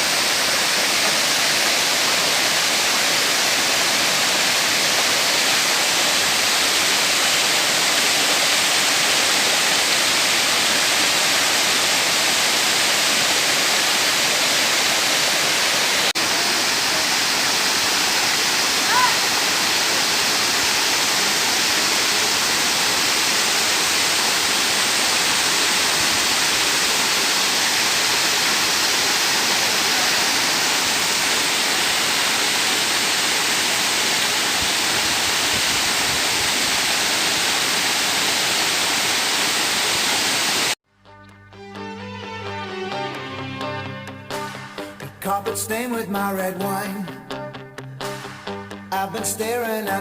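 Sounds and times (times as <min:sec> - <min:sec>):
waterfall rushing: 0:00.0 - 0:40.8
song with instruments: 0:40.9 - 0:50.0.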